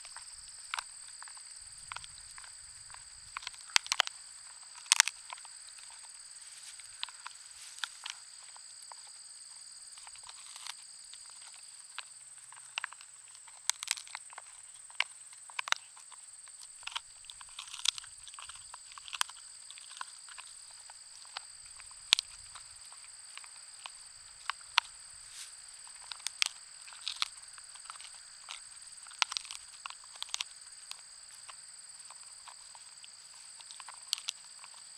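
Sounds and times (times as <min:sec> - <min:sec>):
dog gnawing a bone: 0:00.0 - 0:06.1, 0:12.6 - 0:14.5, 0:15.5 - 0:34.8.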